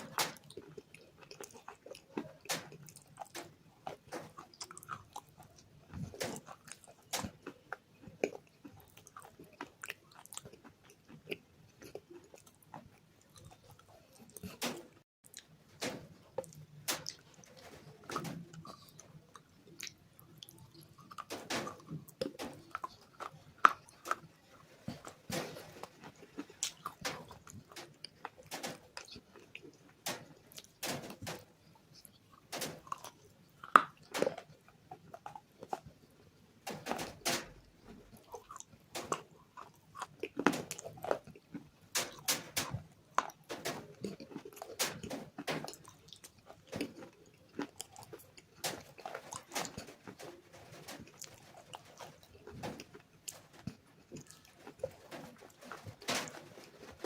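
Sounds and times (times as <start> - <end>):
wet chewing: 0.0 - 15.6, 16.3 - 30.8, 38.1 - 50.4
crunchy bars being bitten: 0.0 - 57.0.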